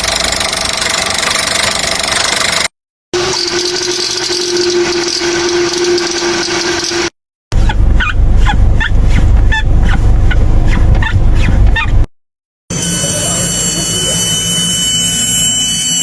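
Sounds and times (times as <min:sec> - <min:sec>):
car running with droning hum: 0:03.2 - 0:12.1.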